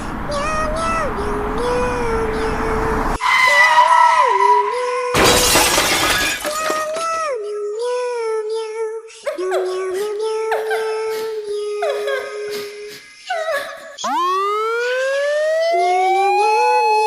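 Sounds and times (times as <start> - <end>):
synthetic sung melody: 0.0 - 5.2, 6.6 - 17.0
loud crash: 4.8 - 7.0.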